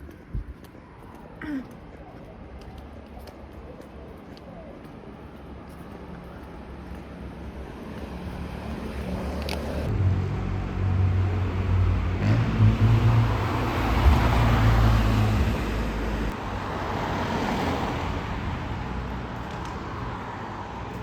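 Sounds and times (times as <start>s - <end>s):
road noise: 0.0s - 21.0s
vehicle engine hum: 7.6s - 21.0s.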